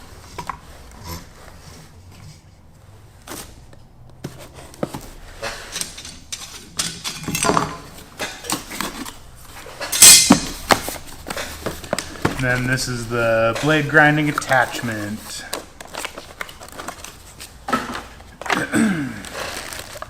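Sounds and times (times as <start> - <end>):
tool parts clicking and knocking: 5.5 - 9.1, 9.9 - 12.6
packaging rustling: 10.4 - 20.0.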